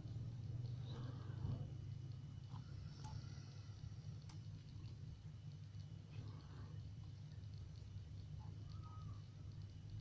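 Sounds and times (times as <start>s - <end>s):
steady low hum: 0.0s - 10.0s.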